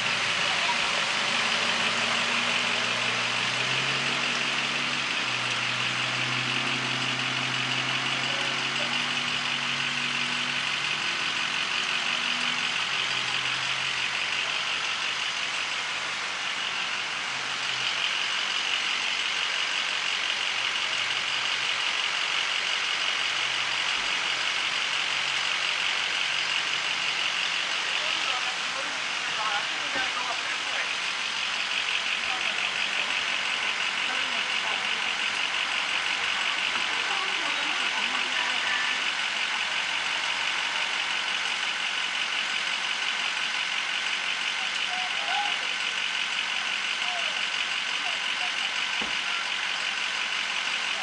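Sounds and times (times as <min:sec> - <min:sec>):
vehicle engine idling: 0:00.0 - 0:51.0
heavy rain pouring: 0:25.2 - 0:51.0.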